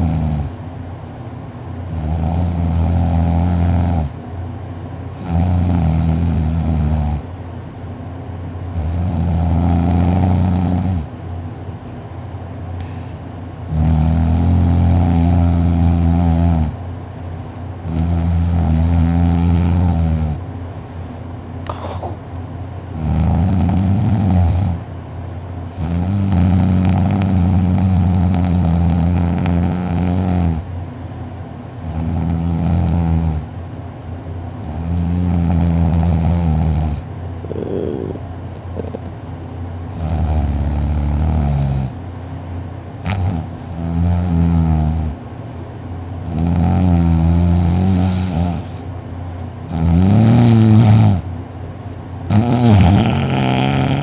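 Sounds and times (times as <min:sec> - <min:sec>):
man snoring heavily: 0:00.0 - 0:00.5, 0:01.9 - 0:04.1, 0:05.2 - 0:07.2, 0:08.7 - 0:11.1, 0:13.7 - 0:16.8, 0:17.9 - 0:20.4, 0:23.0 - 0:24.8, 0:25.8 - 0:30.6, 0:31.8 - 0:33.5, 0:34.6 - 0:38.2, 0:40.0 - 0:42.0, 0:43.0 - 0:45.2, 0:46.3 - 0:48.8, 0:49.7 - 0:51.2, 0:52.3 - 0:54.0.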